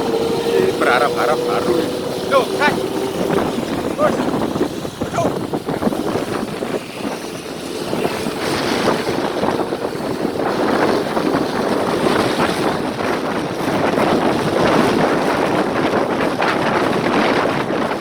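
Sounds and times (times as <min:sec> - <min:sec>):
rough exhaust rumble: 0:00.0 - 0:14.4.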